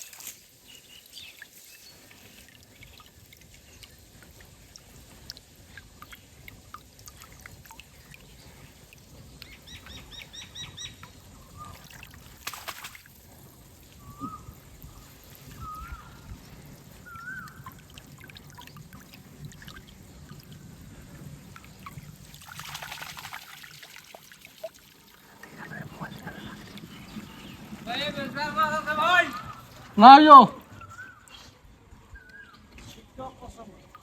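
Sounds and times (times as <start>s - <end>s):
water trickling and splashing: 0.0s - 34.0s
birds chirping and whistling: 14.0s - 16.3s, 17.0s - 17.6s, 30.7s - 33.0s.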